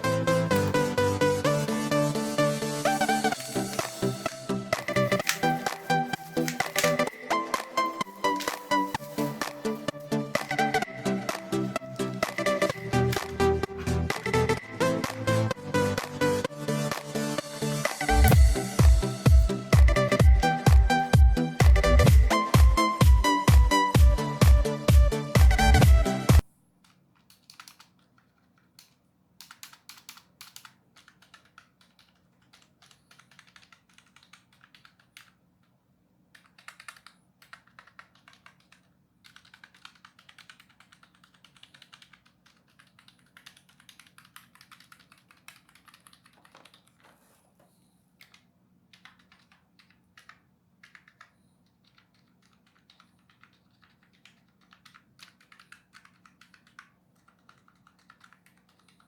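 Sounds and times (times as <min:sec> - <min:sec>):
keyboard key clicks: 0:26.8 - 0:35.4.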